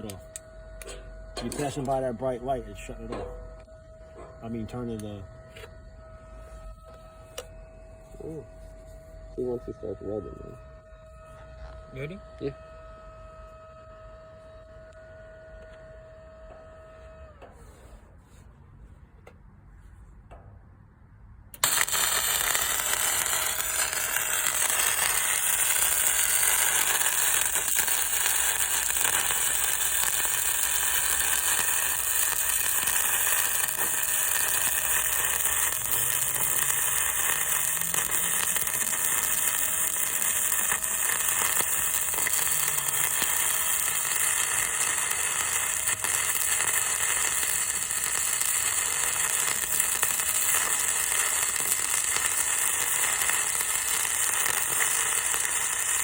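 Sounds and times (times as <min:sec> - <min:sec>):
welding arc crackling and sizzling: 0:00.0 - 0:02.9, 0:21.6 - 0:56.0.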